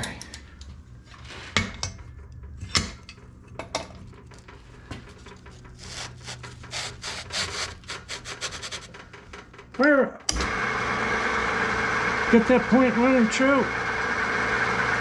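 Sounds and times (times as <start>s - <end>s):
metal scraping on metal: 5.0s - 9.4s.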